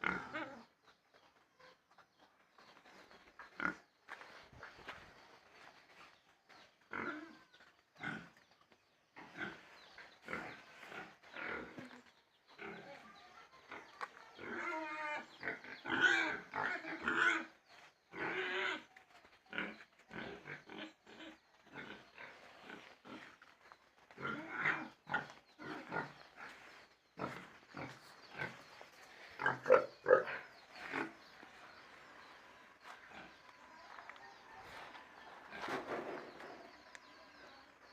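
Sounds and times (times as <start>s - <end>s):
pig calls: 0.0s - 0.8s, 9.2s - 23.5s, 24.1s - 37.9s
pigs grunting: 0.0s - 1.0s, 2.6s - 37.9s.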